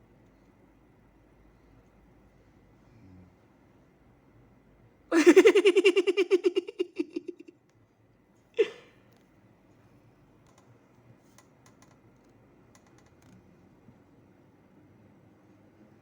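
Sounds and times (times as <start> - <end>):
cartoon character quavering laugh: 5.1 - 7.5.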